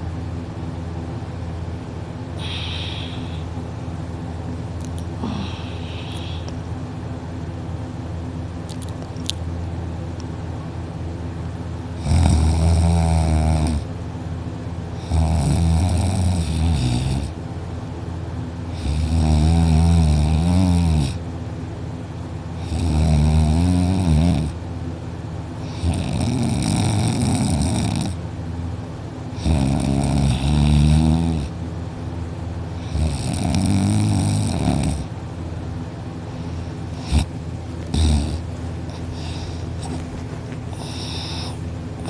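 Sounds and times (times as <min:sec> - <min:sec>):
steady low hum: 0:00.0 - 0:42.0
person snoring loudly: 0:12.0 - 0:13.9, 0:15.0 - 0:17.3, 0:18.7 - 0:21.2, 0:22.6 - 0:24.6, 0:25.7 - 0:28.2, 0:29.4 - 0:31.5, 0:32.8 - 0:35.1, 0:37.0 - 0:37.3, 0:37.9 - 0:38.4, 0:40.7 - 0:41.6.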